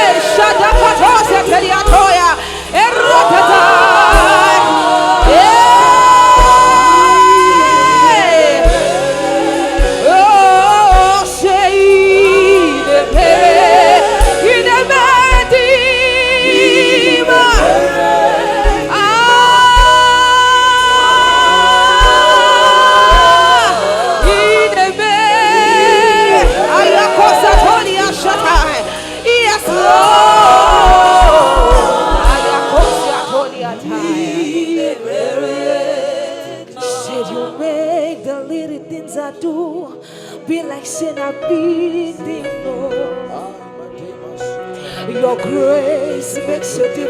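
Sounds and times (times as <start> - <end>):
low drum thumps: 0.0 - 33.5
band playing: 0.0 - 37.7
people singing worship song: 0.0 - 47.0.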